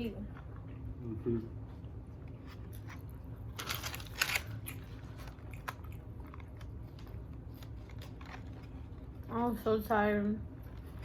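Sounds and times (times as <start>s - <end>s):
crunching bites of food: 2.4s - 8.8s.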